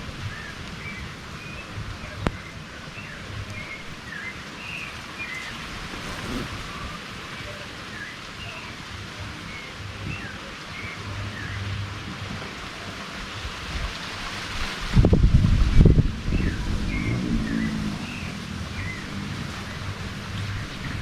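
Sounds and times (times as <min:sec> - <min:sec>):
loud low rumble: 0:15.1 - 0:21.0.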